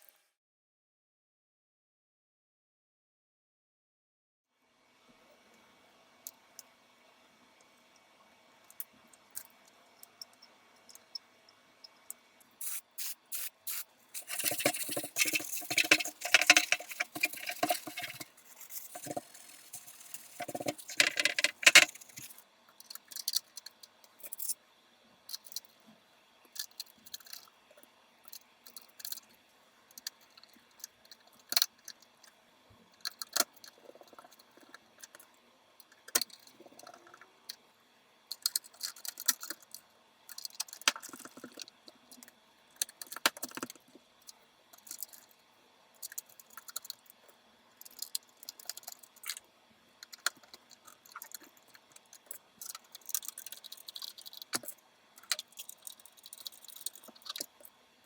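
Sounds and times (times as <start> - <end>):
small parts clicking and rattling: 12.6 - 24.6, 25.3 - 25.8, 26.5 - 29.3, 29.9 - 32.4, 33.0 - 37.6, 38.3 - 45.4, 46.0 - 57.7.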